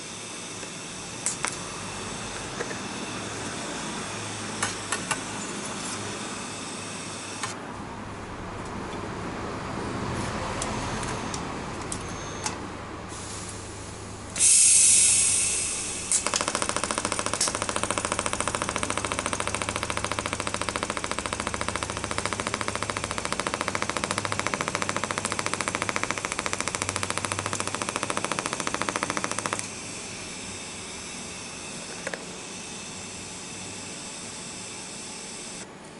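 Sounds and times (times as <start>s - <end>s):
welding arc hissing and pulsing: 13.2s - 35.6s.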